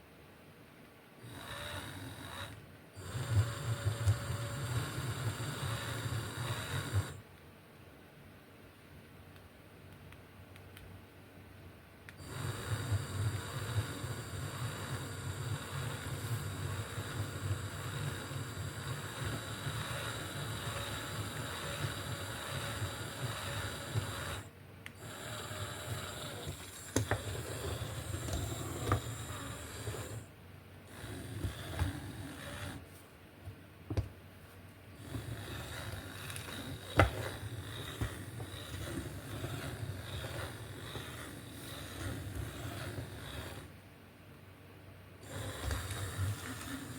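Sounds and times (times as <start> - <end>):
small gear motors running: 1.2 - 7.2, 12.2 - 30.3, 30.9 - 32.8, 35.0 - 43.8, 45.2 - 46.9.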